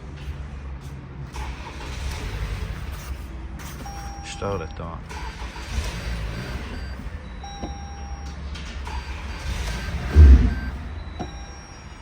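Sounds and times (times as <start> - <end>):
car engine idling: 0.0 - 12.0
electronic beep: 3.8 - 5.3, 6.3 - 12.0.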